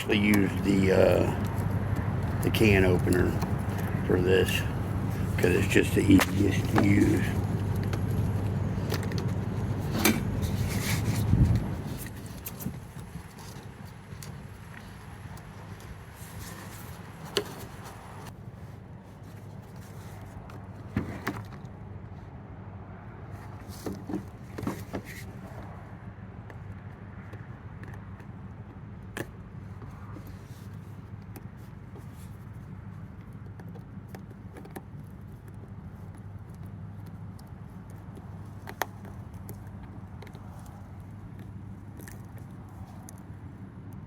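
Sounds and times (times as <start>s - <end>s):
steady low hum: 0.0s - 18.3s.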